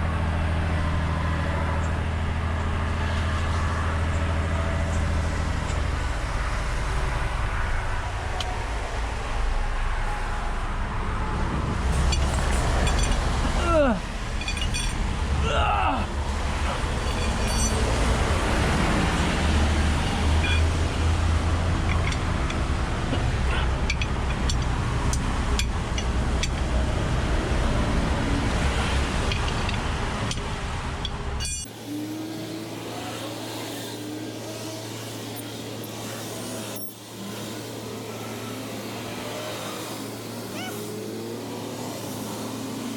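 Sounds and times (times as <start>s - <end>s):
heavy vehicle engine running: 0.0s - 42.9s
metallic clinks: 12.0s - 13.3s, 14.3s - 15.0s, 16.7s - 18.2s, 31.0s - 31.7s.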